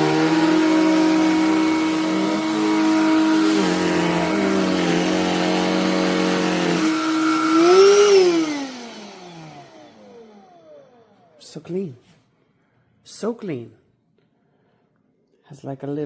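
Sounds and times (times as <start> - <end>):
handheld vacuum motor whine: 0.0 - 11.4.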